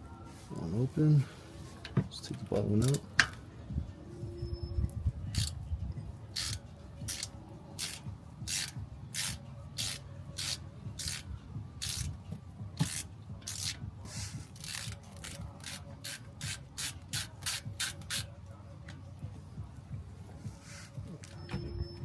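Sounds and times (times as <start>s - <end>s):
ratchet wrench rasping: 5.3s - 5.6s, 6.4s - 12.1s, 12.8s - 18.3s.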